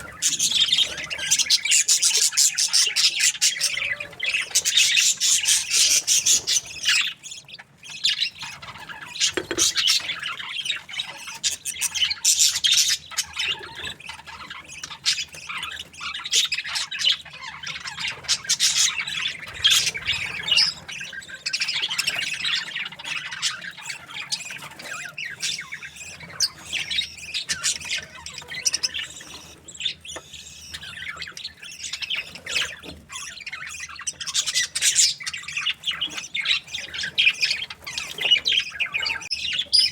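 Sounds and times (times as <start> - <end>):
budgerigars chattering: 0.0 - 39.9.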